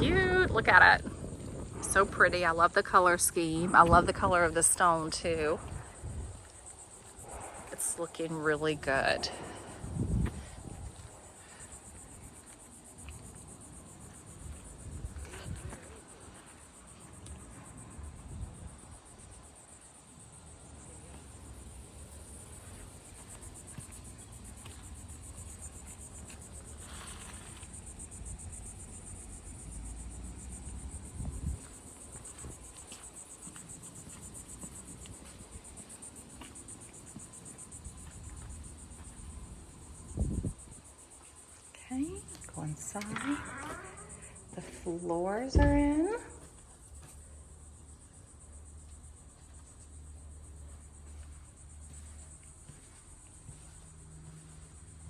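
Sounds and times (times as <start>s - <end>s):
insects chirring: 0.0s - 55.0s.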